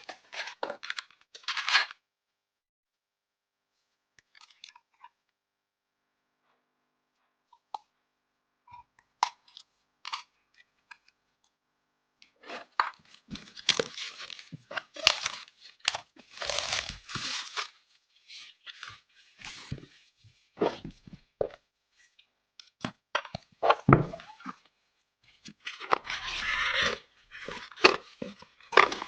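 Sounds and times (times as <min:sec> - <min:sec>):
packaging crinkling and tearing: 0:13.3 - 0:17.7
packaging rustling: 0:13.3 - 0:17.7.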